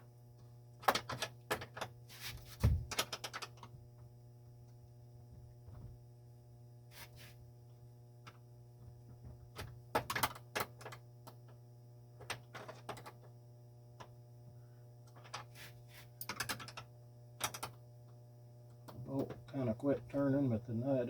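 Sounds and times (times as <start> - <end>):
steady low hum: 13.0 - 21.0.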